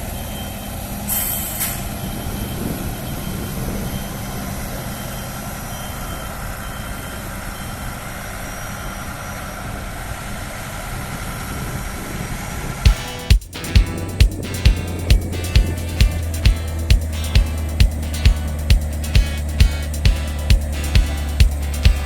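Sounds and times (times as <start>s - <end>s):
vehicle engine running: 12.9s - 22.0s.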